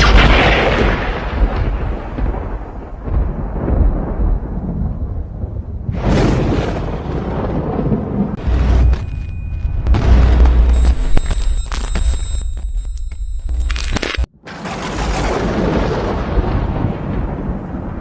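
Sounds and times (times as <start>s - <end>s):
thunder crack and rumble: 0.0s - 8.8s, 14.4s - 18.0s.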